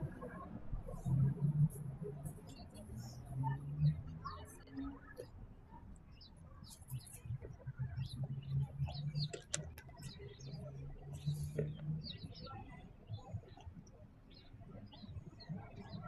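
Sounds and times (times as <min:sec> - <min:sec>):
birds chirping: 0:06.0 - 0:16.0.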